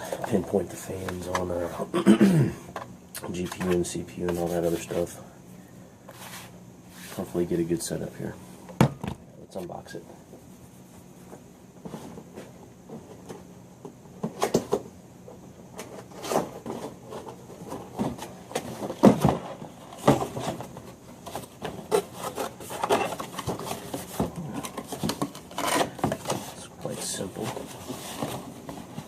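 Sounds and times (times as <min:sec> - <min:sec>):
packaging rubbing and scraping: 0:15.8 - 0:29.0.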